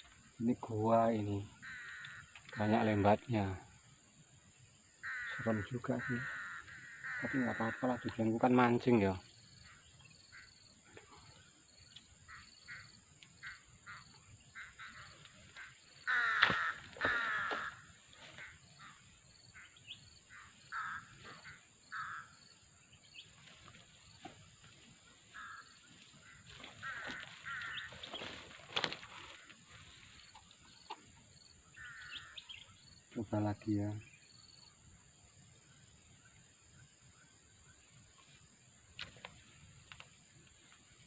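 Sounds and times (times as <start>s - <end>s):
high insect drone: 0.0s - 41.0s
crows cawing: 1.2s - 3.6s, 4.9s - 8.8s, 12.2s - 22.8s, 23.6s - 32.8s.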